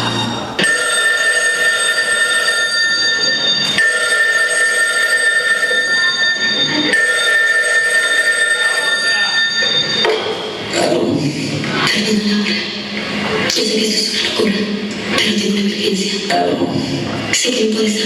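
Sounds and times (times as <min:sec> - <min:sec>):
electronic telephone ringing: 0:00.6 - 0:10.5.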